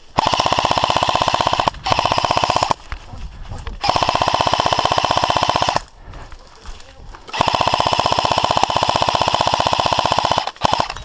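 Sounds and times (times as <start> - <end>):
airsoft gun firing full auto: 0.1 - 2.8, 3.8 - 5.9, 7.3 - 11.0.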